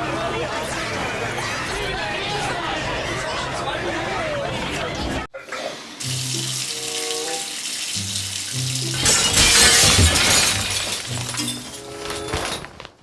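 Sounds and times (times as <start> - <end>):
glass smashing: 6.0 - 12.8.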